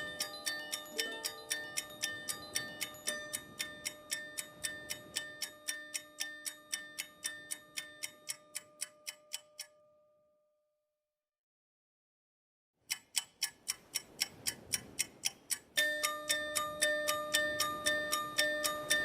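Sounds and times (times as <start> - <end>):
clock-like ticking: 0.0 - 9.8, 12.8 - 19.0
held tones: 0.0 - 9.8, 15.8 - 19.0.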